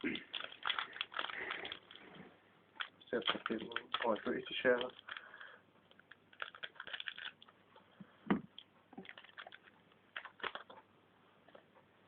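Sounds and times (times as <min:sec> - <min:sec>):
card pack clicks and rustles: 0:00.0 - 0:02.1, 0:02.8 - 0:07.5, 0:09.0 - 0:10.8.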